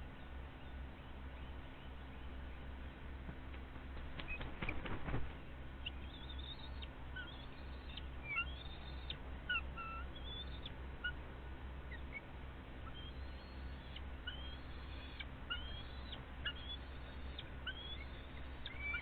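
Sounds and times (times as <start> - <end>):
eagle whistled calls: 5.9 - 11.2, 11.9 - 19.0.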